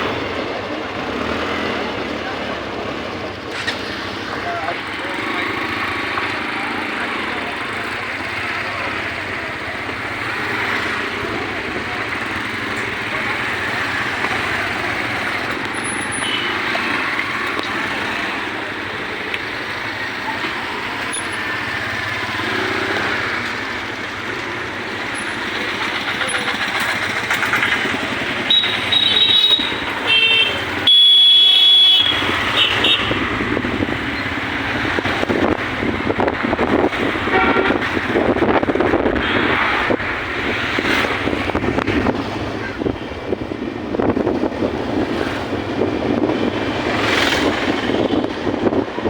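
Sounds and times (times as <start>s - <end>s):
train running: 23.8s - 29.3s.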